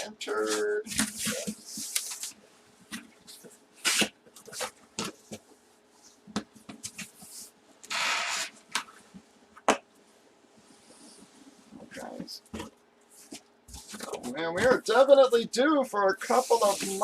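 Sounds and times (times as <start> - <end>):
cardboard rustling: 0.3 - 5.5.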